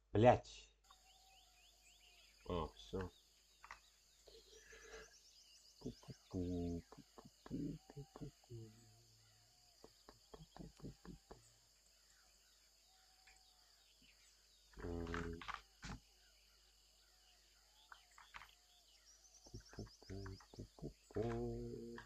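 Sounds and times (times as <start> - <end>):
faint bird chirps: 0.8 - 22.0
pitched voice-like sound: 5.8 - 8.8, 10.3 - 11.4, 20.1 - 22.0.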